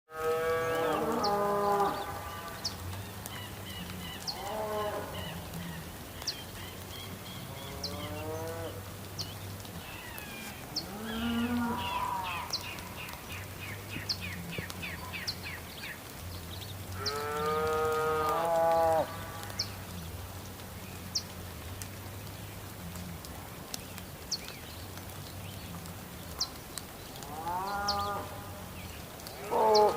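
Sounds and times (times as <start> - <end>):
rain: 0.1 - 29.9
sharp drips: 0.8 - 29.9
cattle mooing: 10.8 - 12.4.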